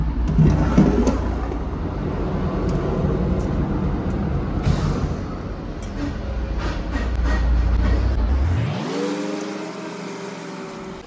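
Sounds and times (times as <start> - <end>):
engine running low rumble: 0.0 - 8.6.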